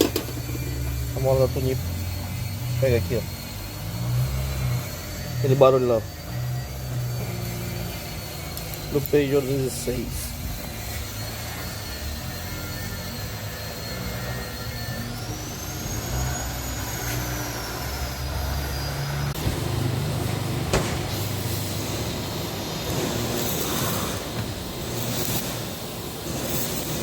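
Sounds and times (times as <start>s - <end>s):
thin high whine: 0.0s - 27.0s
car engine humming: 14.0s - 26.2s.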